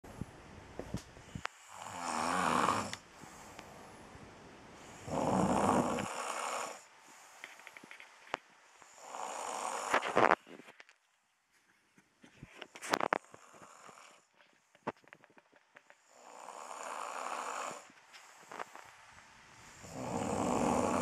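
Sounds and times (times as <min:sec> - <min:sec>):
person snoring: 0:01.4 - 0:03.6, 0:04.8 - 0:06.9, 0:08.8 - 0:10.4, 0:13.1 - 0:14.3, 0:16.0 - 0:17.9, 0:19.6 - 0:21.0.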